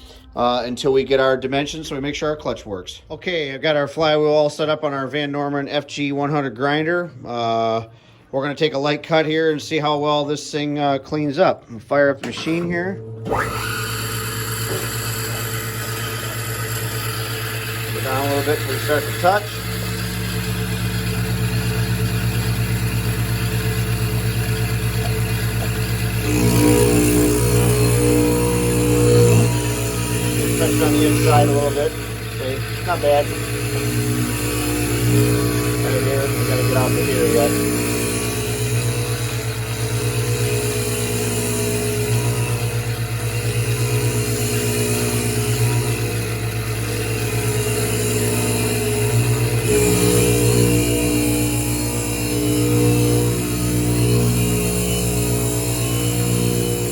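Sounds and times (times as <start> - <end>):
grinder motor humming with pulsing: 12.2 - 56.9.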